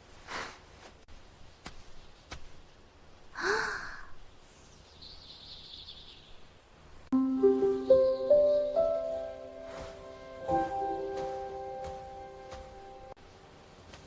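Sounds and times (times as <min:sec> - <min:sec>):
breathy sigh-like sound: 0:03.4 - 0:04.2
faint high chirping: 0:07.2 - 0:13.2.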